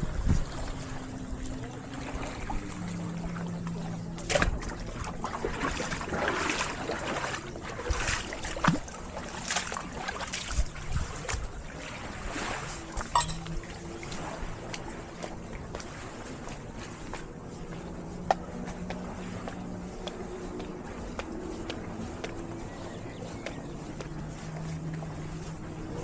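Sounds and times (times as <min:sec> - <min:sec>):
knocks and splashes: 0:00.0 - 0:17.3
low steady hum: 0:00.0 - 0:26.0
water lapping and sloshing: 0:00.0 - 0:26.0.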